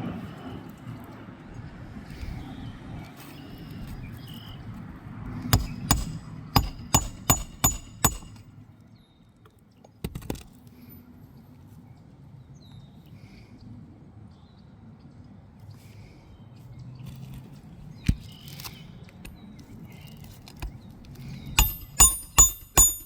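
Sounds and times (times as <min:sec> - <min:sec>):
hammer striking roofing nails: 0:05.6 - 0:08.4, 0:21.6 - 0:23.0.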